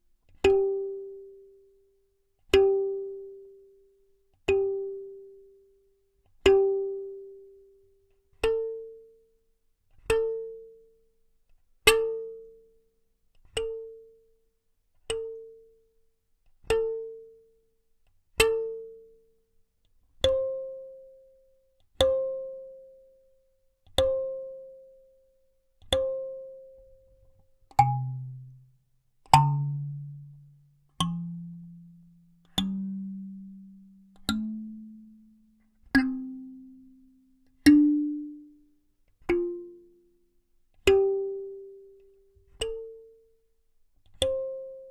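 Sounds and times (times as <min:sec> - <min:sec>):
kalimba notes plucked: 0:27.8 - 0:28.7, 0:29.3 - 0:35.3, 0:36.0 - 0:38.7, 0:39.3 - 0:40.2.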